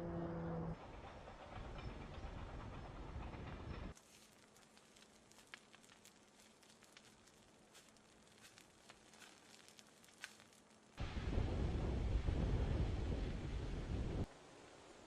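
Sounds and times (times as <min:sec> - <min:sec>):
wildfire crackling and popping: 0:03.9 - 0:14.3.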